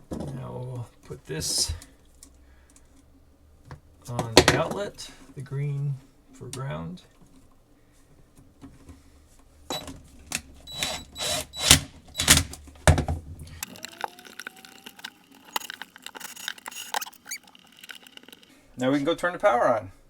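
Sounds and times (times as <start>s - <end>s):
screwdriver clicks and scrapes: 9.7s - 12.6s, 13.6s - 18.5s.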